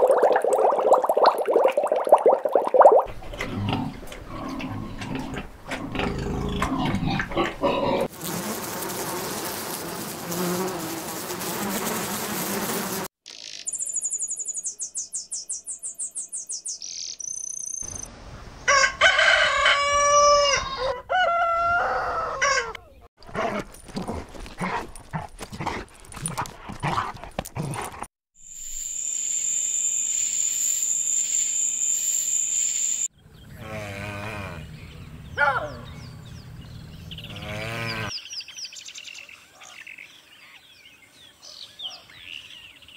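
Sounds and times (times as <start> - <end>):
high chirps: 13.3 - 18.1, 28.4 - 33.1.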